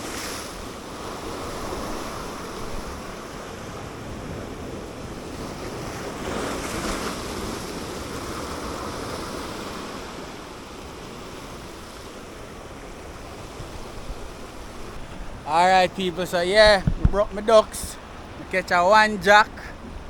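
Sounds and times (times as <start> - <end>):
surf washing against rocks: 0.0 - 20.0
wind buffeting microphone: 13.0 - 20.0.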